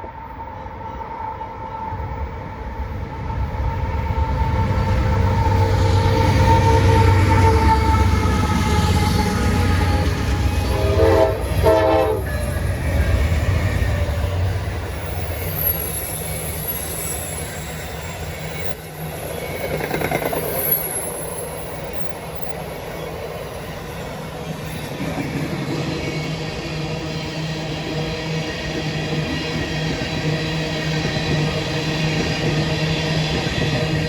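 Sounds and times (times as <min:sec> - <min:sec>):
locomotive horn: 0:03.7 - 0:13.6
train wheel clatter: 0:05.0 - 0:26.4
wheel squeal: 0:12.2 - 0:26.6.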